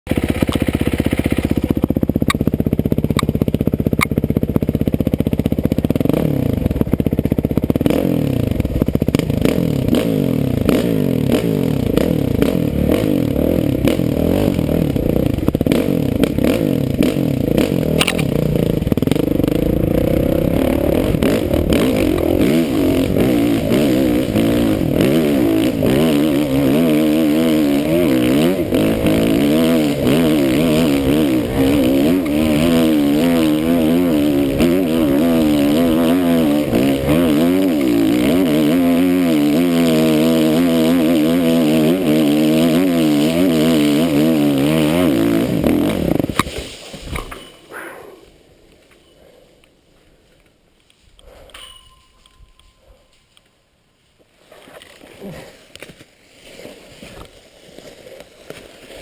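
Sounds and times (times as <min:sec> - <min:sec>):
dirt bike engine revving: 0:00.1 - 0:46.7.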